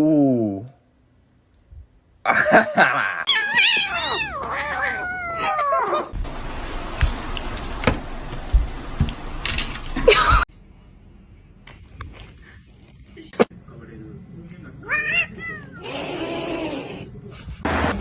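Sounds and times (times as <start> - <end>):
cat meowing: 3.3 - 6.1.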